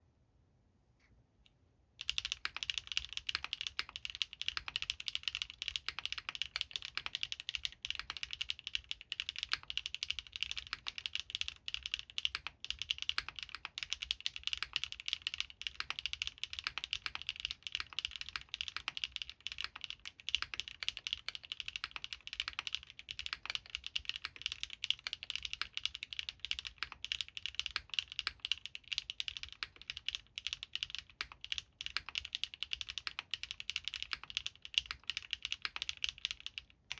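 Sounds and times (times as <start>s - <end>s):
mechanical keyboard typing: 2.0s - 36.9s.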